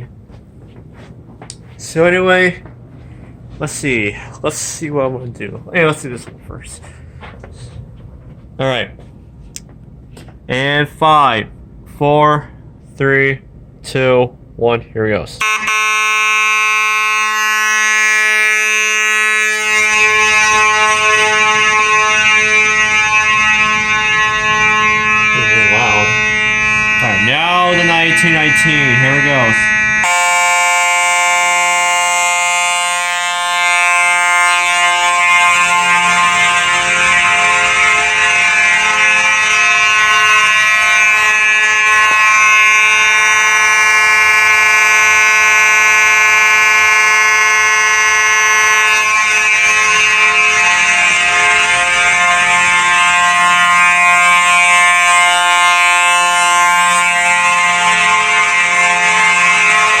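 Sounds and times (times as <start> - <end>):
fire alarm horn: 15.4 - 60.0.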